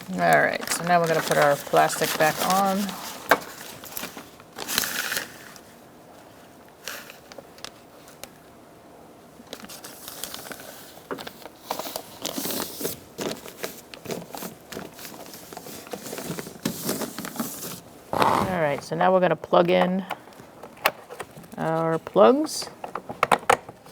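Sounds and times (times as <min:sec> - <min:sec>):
plastic sheet crinkling: 0:00.2 - 0:05.5.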